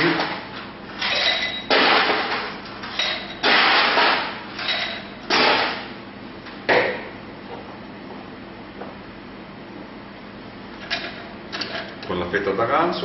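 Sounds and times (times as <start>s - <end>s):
glassware and bar tools clattering: 1.0s - 1.7s.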